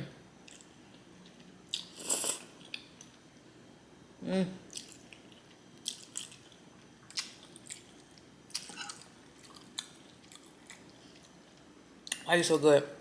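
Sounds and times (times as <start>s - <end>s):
person chewing food: 4.7s - 12.2s.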